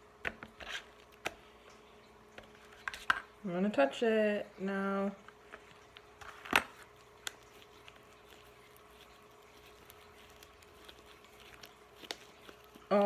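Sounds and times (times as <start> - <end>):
sticky slime crackles: 5.8 - 13.0.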